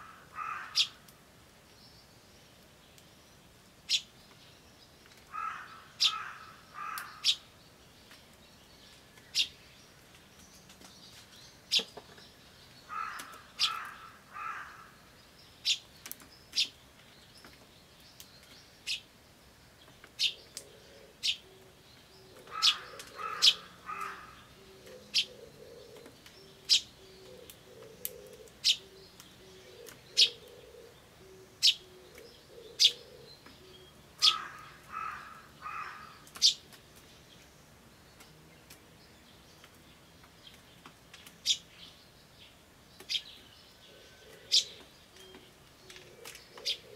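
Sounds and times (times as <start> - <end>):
crow cawing: 0.0 - 1.0, 5.3 - 7.4, 12.9 - 15.0, 22.4 - 24.5, 34.2 - 36.3
dove cooing: 20.6 - 36.1, 43.9 - 44.9, 45.8 - 46.9.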